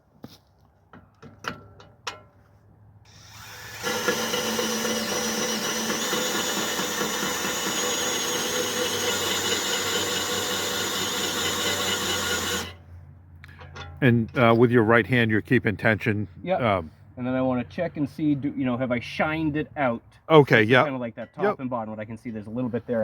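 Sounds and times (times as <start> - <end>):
electric grinder grinding metal: 3.1 - 12.8.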